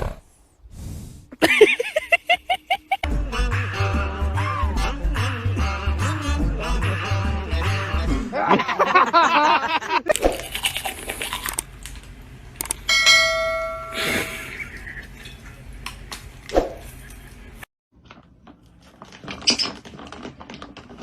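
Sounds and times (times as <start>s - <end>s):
bell-like ding: 12.9s - 14.1s.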